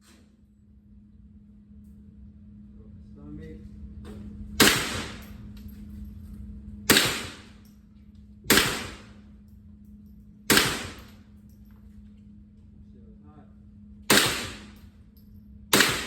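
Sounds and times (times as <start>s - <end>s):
rifle shots with ringing tail: 4.6s - 5.6s, 6.8s - 7.8s, 8.5s - 9.4s, 10.4s - 11.4s, 14.0s - 16.0s.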